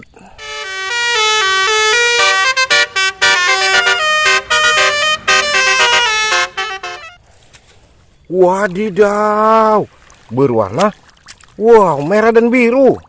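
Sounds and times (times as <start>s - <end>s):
musical bus horn tune: 0.4s - 7.2s.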